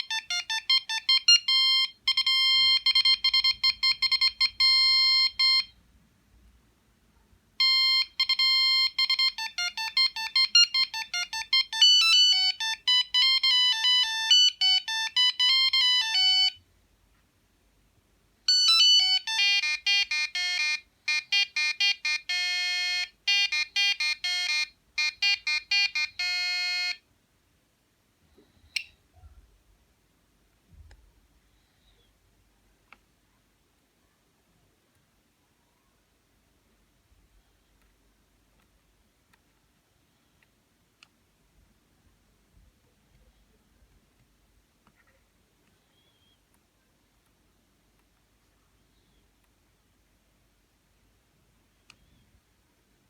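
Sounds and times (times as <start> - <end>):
electronic ringtone melodies: 0.0 - 5.7, 7.6 - 16.6, 18.5 - 27.0.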